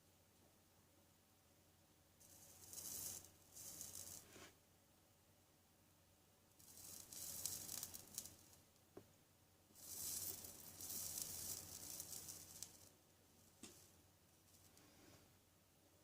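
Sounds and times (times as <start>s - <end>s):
soft hissing with faint crackles: 2.2s - 4.6s, 6.5s - 9.1s, 9.7s - 15.4s.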